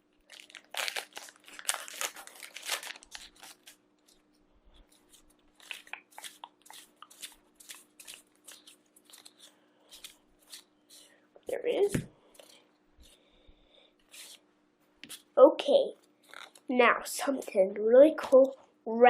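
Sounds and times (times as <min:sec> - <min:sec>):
foil wrapper tearing and crinkling: 0:00.2 - 0:03.8, 0:05.5 - 0:10.6.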